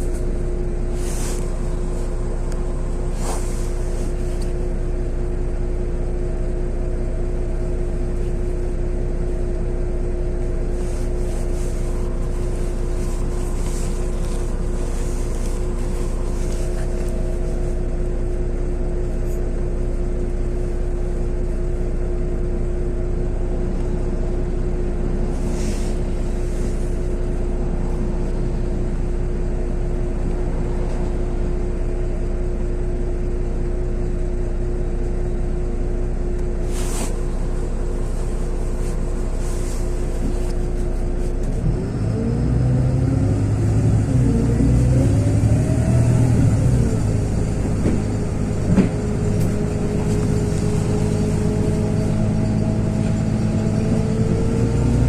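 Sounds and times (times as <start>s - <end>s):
rattles and clicks from bus body: 0.0s - 5.0s, 10.2s - 21.6s, 36.3s - 55.0s
bus engine and road rumble: 0.0s - 55.0s.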